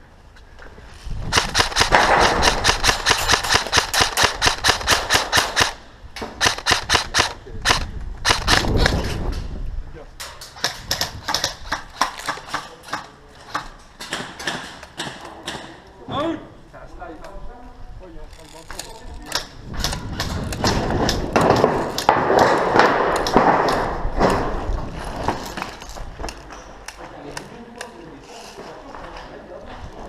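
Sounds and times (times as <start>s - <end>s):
airsoft gun firing bursts: 1.3s - 5.8s, 6.4s - 9.0s.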